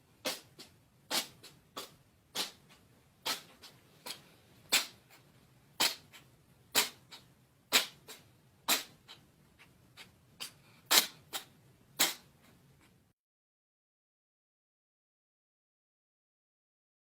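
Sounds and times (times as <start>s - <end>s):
pet sneezing: 0.2s - 5.2s, 5.8s - 9.2s, 10.0s - 12.6s.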